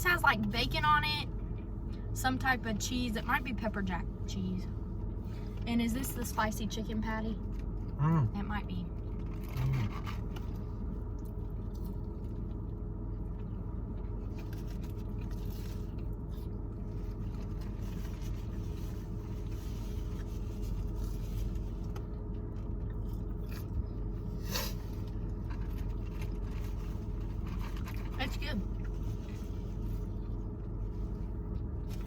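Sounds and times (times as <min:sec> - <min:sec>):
rustles and clicks of eating: 0:07.4 - 0:32.0.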